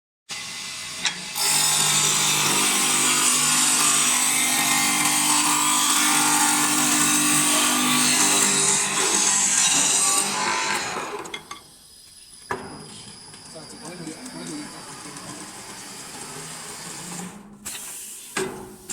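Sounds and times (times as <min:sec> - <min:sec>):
lathe cutter shaving wood: 0:00.3 - 0:11.3.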